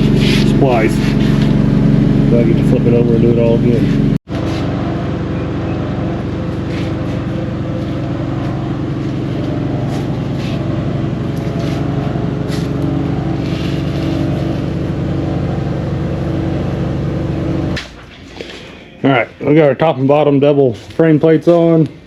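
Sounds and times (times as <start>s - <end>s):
engine running steadily: 0.0s - 18.9s.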